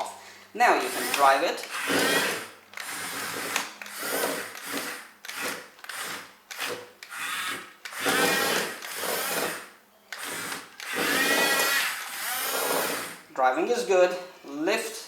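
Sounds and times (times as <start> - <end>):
electric motors whining: 10.2 - 13.2.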